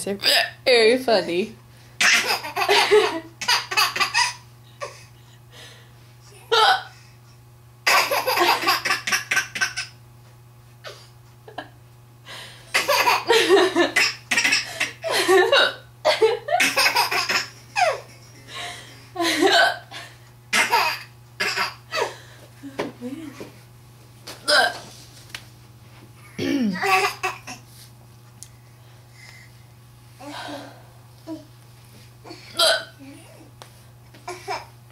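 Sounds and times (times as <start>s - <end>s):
woman hiccuping: 0.2s - 0.6s, 6.5s - 6.9s, 15.4s - 15.9s, 19.5s - 19.9s, 24.4s - 24.8s, 26.4s - 26.9s, 32.6s - 33.0s
young child laughing: 7.9s - 9.9s, 12.8s - 18.4s.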